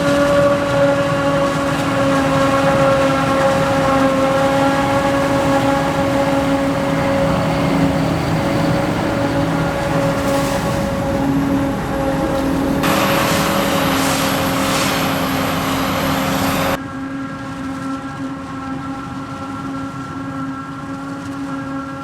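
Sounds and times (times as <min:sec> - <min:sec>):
farm machinery engines humming: 0:00.0 - 0:16.8
loud rushing noise: 0:00.0 - 0:16.8.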